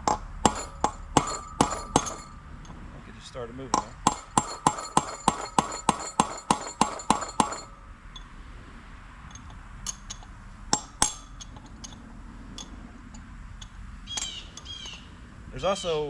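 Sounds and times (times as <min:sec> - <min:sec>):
hammer striking steel punch: 0:00.0 - 0:02.4, 0:03.7 - 0:07.8, 0:10.8 - 0:11.4
sharp knocks: 0:00.0 - 0:02.4, 0:03.7 - 0:07.7.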